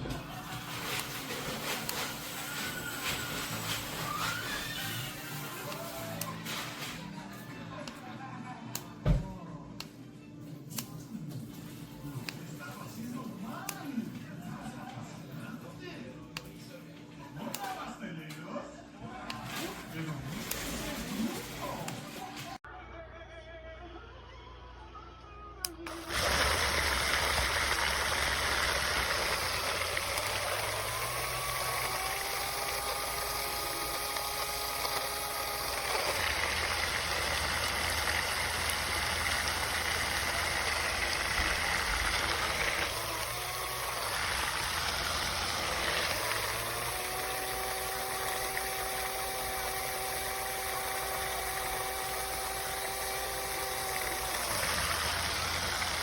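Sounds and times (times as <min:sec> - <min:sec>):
blender motor whine: 0:00.0 - 0:06.8, 0:25.9 - 0:56.0.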